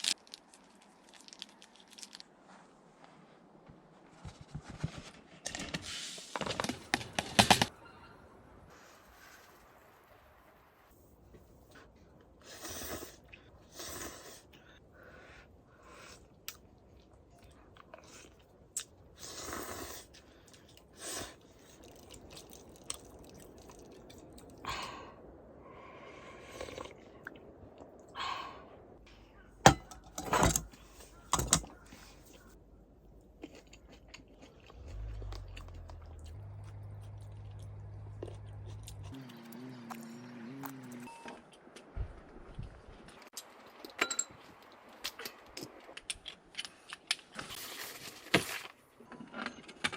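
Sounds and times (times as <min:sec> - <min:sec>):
rustles and scrapes: 0:00.0 - 0:07.7, 0:08.7 - 0:10.3, 0:46.6 - 0:49.9
low steady hum: 0:21.5 - 0:43.1.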